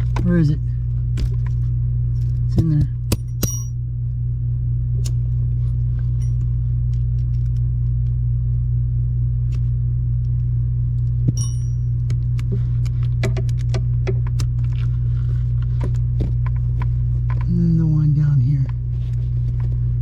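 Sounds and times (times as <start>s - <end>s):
steady low hum: 0.0s - 20.0s
ringing metallic clink: 3.1s - 3.8s, 11.3s - 12.0s.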